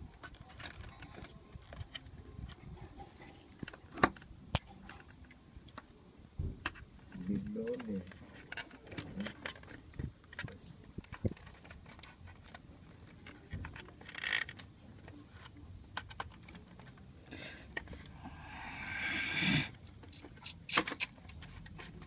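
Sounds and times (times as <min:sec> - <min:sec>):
clicks and knocks of small parts: 0:06.6 - 0:17.0.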